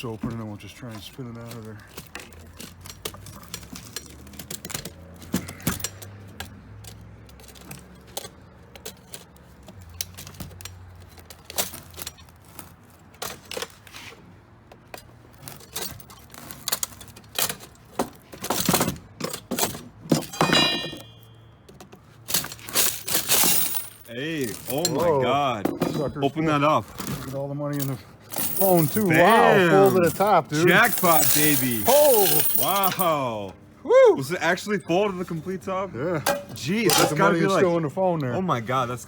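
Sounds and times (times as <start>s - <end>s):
tools clanking on metal box: 0.9s - 12.2s, 14.8s - 26.3s, 26.9s - 33.2s, 36.2s - 37.4s
ringing metallic clink: 20.3s - 21.4s
coins jingling: 22.4s - 25.2s, 27.7s - 33.4s.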